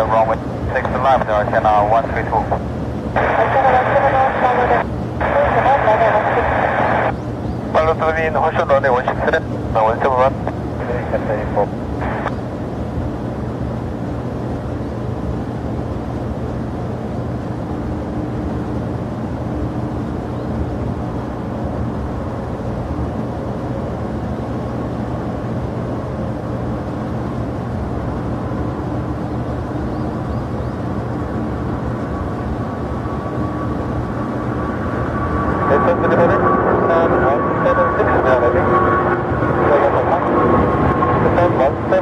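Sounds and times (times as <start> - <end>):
jet engine whine: 0.0 - 42.0
jet engines rumbling: 0.0 - 42.0.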